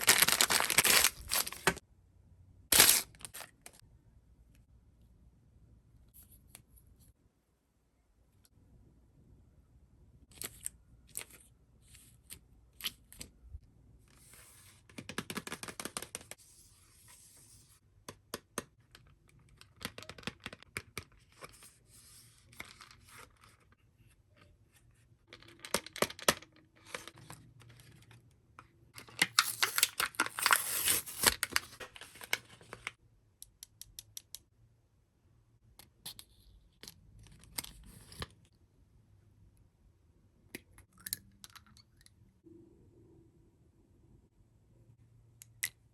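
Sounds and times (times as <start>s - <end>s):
plastic packaging tearing and crinkling: 0.0s - 1.8s, 2.7s - 3.5s, 29.3s - 32.0s.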